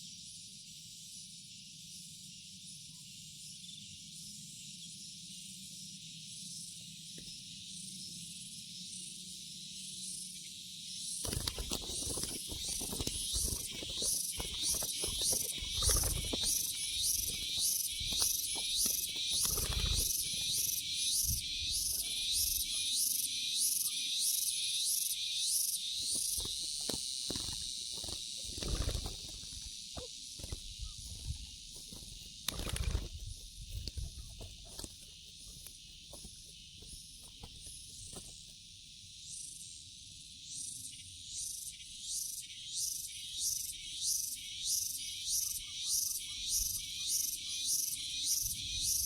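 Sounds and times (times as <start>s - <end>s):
insects chirping: 0.0s - 49.0s
rustles: 11.2s - 22.8s, 26.0s - 38.6s.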